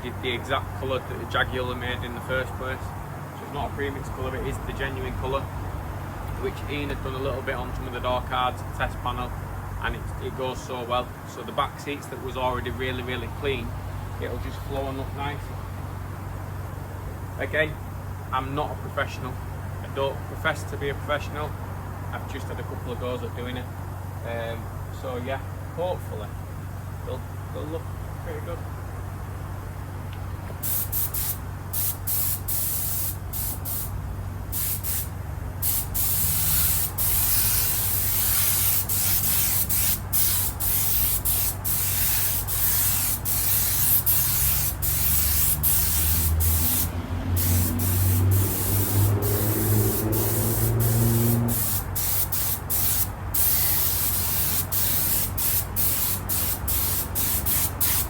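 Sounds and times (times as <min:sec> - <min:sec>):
steady low hum: 0:00.0 - 0:58.0
spray hissing: 0:30.6 - 0:58.0.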